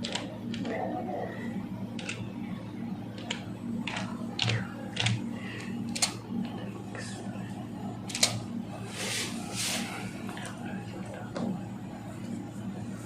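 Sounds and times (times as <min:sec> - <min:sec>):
computer keyboard keystrokes: 0:00.0 - 0:00.7, 0:02.0 - 0:02.3, 0:03.1 - 0:06.2, 0:08.1 - 0:08.4
steady low hum: 0:00.0 - 0:13.0.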